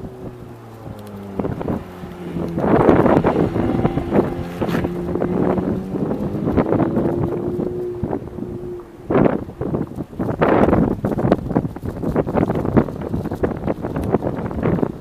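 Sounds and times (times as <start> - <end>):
car engine running: 0.0 - 15.0
wind buffeting microphone: 0.0 - 15.0.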